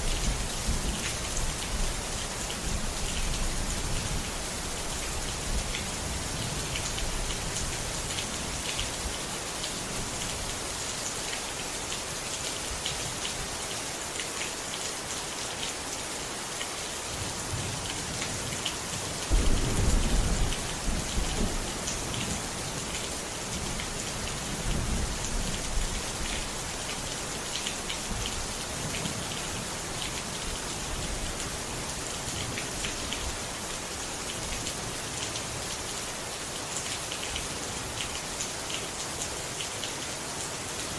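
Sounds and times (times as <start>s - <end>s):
steady rain: 0.0s - 40.9s
low rumble of thunder: 19.3s - 22.4s.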